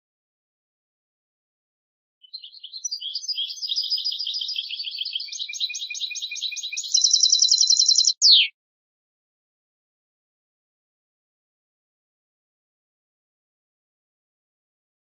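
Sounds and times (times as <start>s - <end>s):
goldfinch singing: 2.2s - 8.5s.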